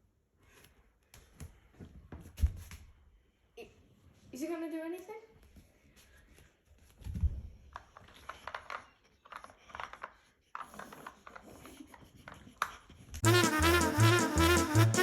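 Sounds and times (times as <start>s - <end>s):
plastic toy clicking and scraping: 7.7s - 13.2s.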